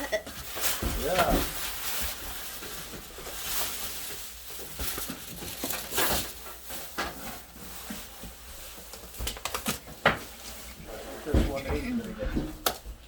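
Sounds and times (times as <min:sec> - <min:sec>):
packaging rustling and scraping: 0:00.0 - 0:12.8.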